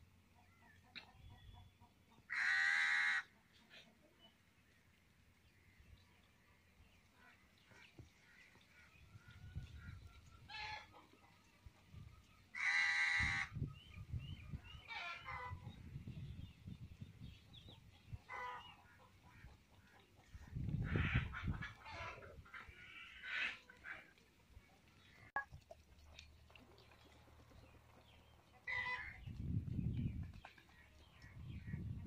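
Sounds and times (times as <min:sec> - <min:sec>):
chickens clucking: 0:00.3 - 0:02.3, 0:09.2 - 0:12.0, 0:17.4 - 0:31.9.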